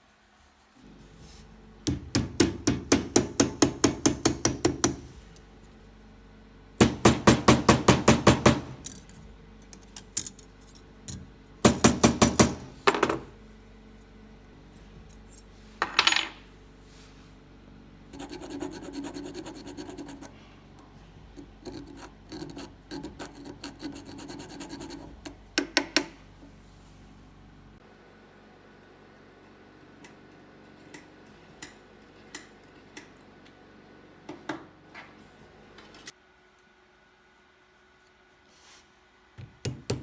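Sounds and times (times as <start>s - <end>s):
hammer tapping on metal: 1.9s - 5.0s
metal being filed: 18.1s - 20.4s, 21.4s - 25.4s.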